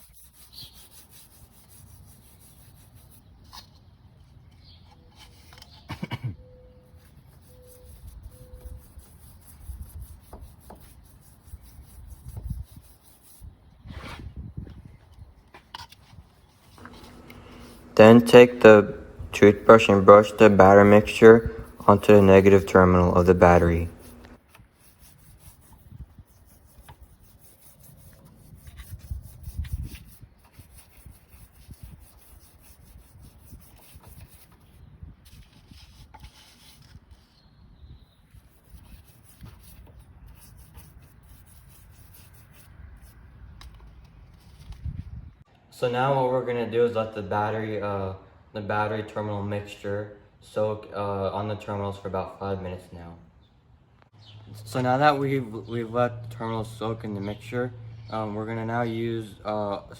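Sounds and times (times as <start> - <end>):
toothbrush scrubbing: 7.3 - 13.3, 16.8 - 34.5.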